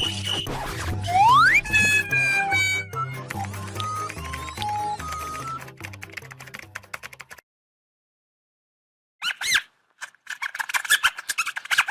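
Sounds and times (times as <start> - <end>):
high whistle-like tone: 0.0 - 2.2.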